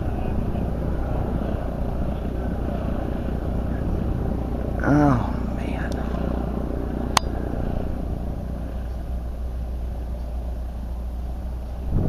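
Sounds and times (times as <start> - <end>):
low engine-like drone: 0.0 - 12.0.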